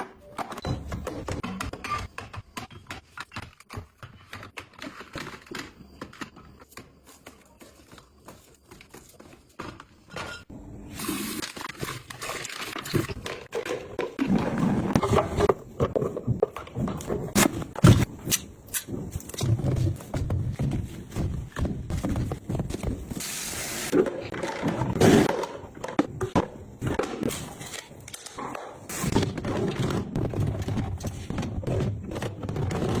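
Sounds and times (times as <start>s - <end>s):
containers knocking and clattering: 11.6s - 18.1s.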